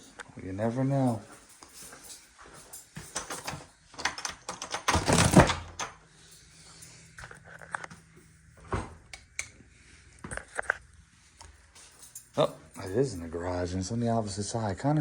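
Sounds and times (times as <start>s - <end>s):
door clicks and knocks: 3.2s - 6.0s.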